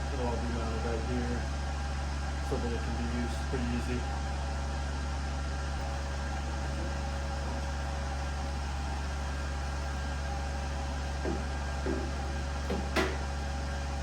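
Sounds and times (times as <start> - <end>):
low machine hum: 0.0 - 14.0
faint knock: 11.2 - 13.2.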